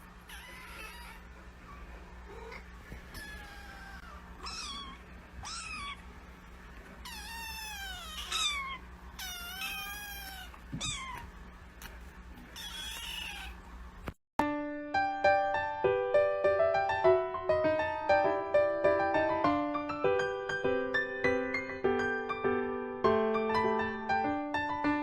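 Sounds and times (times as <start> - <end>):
steady low hum: 0.0 - 14.2
kitten meowing: 0.3 - 1.2, 2.3 - 6.1, 7.0 - 11.4, 12.5 - 13.6.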